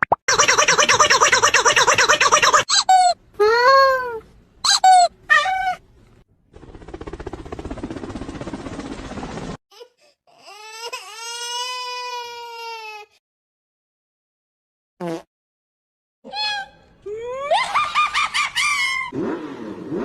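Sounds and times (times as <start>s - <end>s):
cat meowing: 5.3s - 5.8s
cat yowling: 5.3s - 5.8s.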